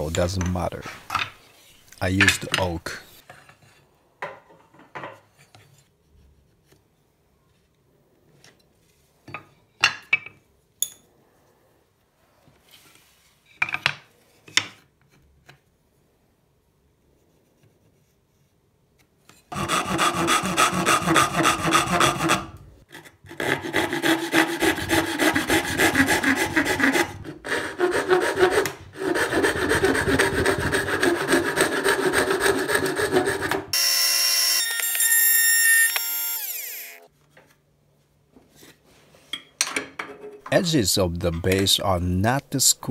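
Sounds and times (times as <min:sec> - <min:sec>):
wood being sawn: 0:19.5 - 0:37.0.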